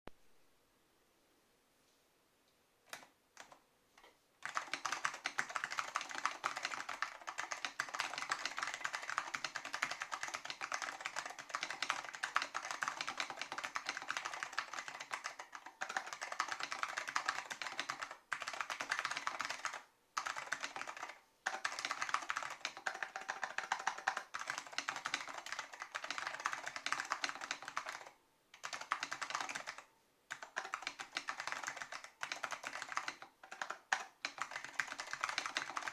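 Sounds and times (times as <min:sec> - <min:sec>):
mechanical keyboard typing: 0:02.9 - 0:03.6, 0:04.4 - 0:35.9.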